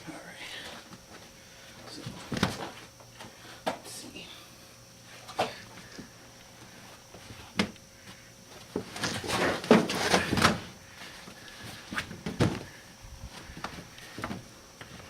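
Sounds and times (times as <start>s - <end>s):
carpet rustling and scraping: 6.6s - 15.0s.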